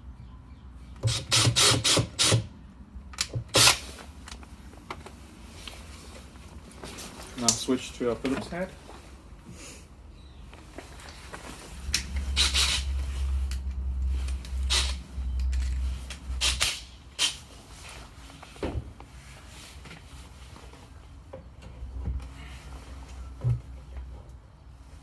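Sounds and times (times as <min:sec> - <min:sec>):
power drill driving screws: 0:01.0 - 0:02.4.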